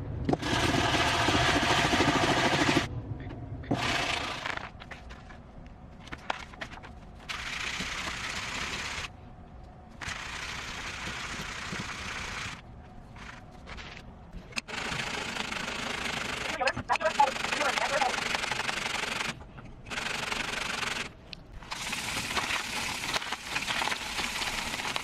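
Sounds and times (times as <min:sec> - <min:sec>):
workshop machine running: 0:00.0 - 0:03.0, 0:03.7 - 0:05.3, 0:07.2 - 0:09.1, 0:10.0 - 0:25.0.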